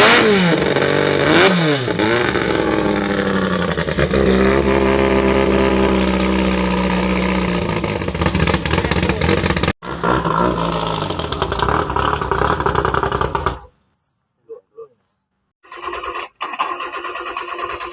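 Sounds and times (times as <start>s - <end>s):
boat engine at high revs: 0.0s - 13.7s.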